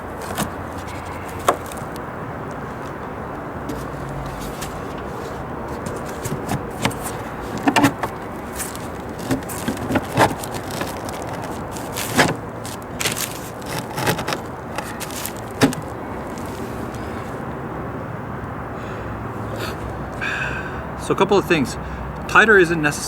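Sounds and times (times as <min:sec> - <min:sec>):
knocks and scrapes of handled panel: 0:00.0 - 0:02.0, 0:03.7 - 0:17.1.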